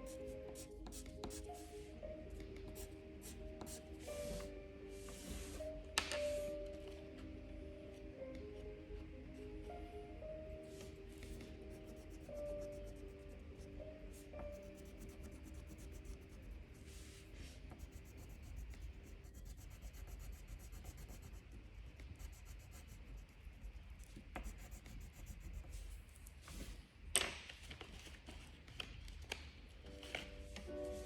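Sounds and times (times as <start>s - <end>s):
drawing strokes on paper: 10.7s - 26.0s.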